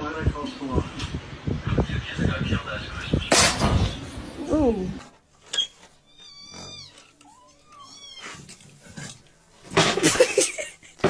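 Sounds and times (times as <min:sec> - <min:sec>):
cat meowing: 0:06.0 - 0:08.6.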